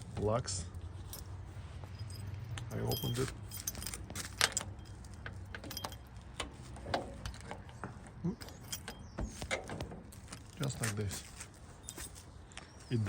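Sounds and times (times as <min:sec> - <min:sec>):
keys jangling: 0:01.0 - 0:07.6, 0:08.3 - 0:09.2, 0:11.8 - 0:12.3
metal clicks and knocks: 0:02.5 - 0:10.5.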